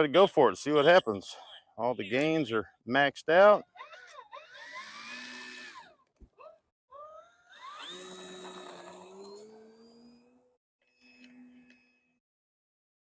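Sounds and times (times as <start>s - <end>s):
model plane motor whining: 4.4s - 6.0s, 7.0s - 11.9s.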